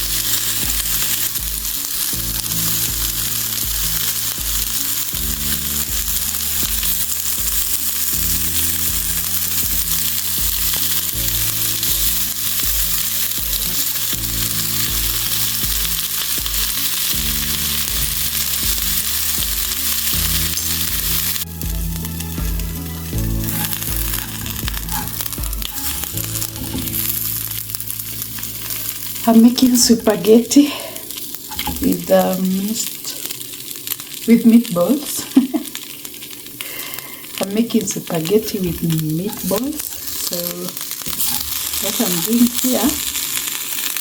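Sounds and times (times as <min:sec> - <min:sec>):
background music with low beat: 0:00.0 - 0:30.3, 0:31.1 - 0:32.2
food sizzling in a pan: 0:00.0 - 0:44.0.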